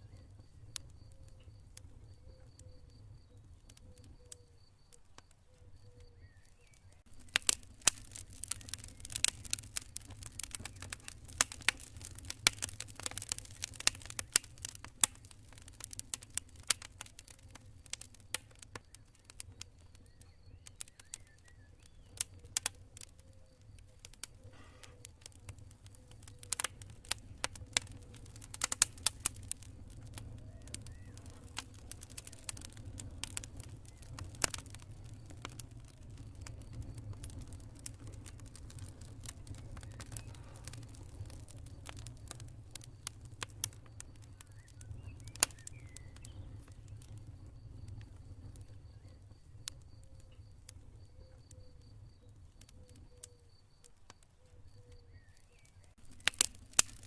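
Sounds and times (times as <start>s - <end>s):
crickets chirping: 0.0s - 8.1s, 32.5s - 57.0s
wood fire crackling: 0.0s - 57.0s.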